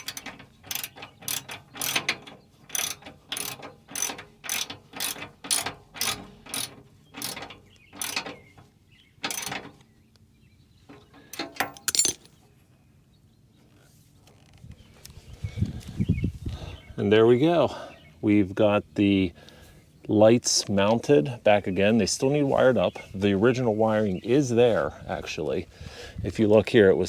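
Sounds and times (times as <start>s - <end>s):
ratchet wrench ratcheting: 0.0s - 8.4s, 9.2s - 9.7s.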